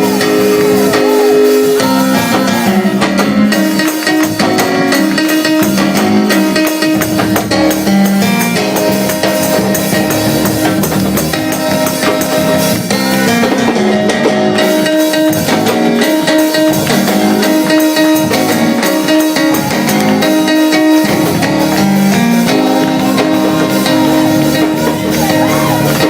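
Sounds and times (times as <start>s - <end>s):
drum kit: 0.0s - 26.0s
guitar: 0.0s - 26.0s
sustained chord tones: 14.5s - 26.0s.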